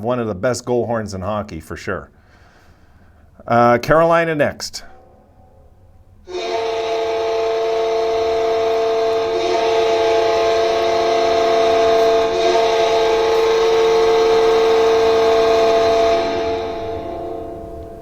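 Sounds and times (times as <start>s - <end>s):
goal horn chord: 6.2s - 18.0s.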